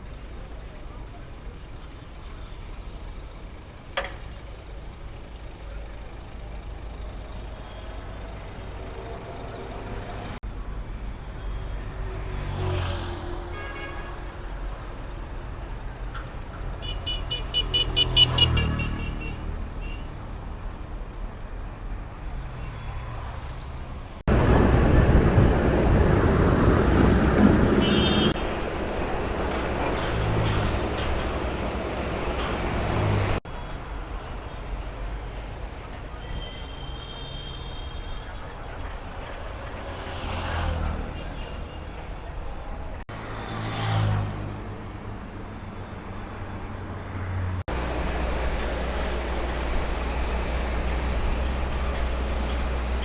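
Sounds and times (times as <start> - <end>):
traffic rumbling past: 22.5 - 36.1
car horn tooting: 27.7 - 28.4.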